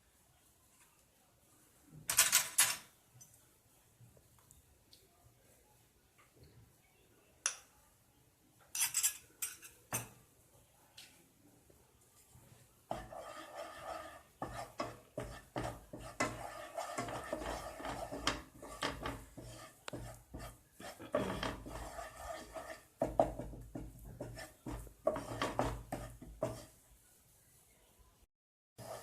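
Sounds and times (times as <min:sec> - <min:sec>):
utensil scraping a pan: 0:12.9 - 0:26.8, 0:28.8 - 0:29.0.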